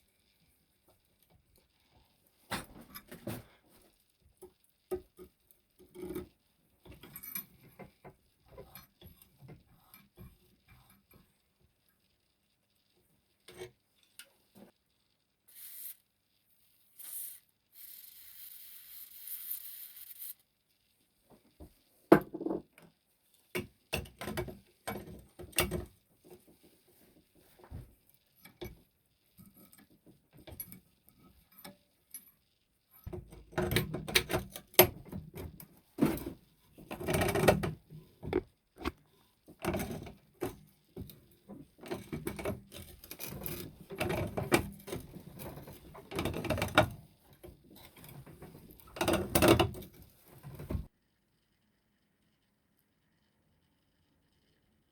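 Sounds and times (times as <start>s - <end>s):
metal tools clinking and scraping: 39.6s - 50.9s.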